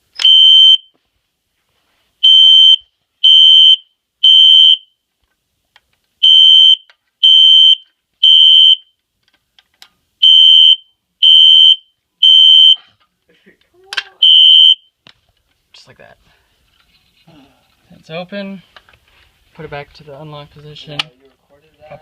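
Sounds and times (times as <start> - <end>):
fire alarm beeping: 0.2 - 0.9, 2.2 - 5.0, 6.2 - 9.0, 10.2 - 12.8, 14.2 - 14.9.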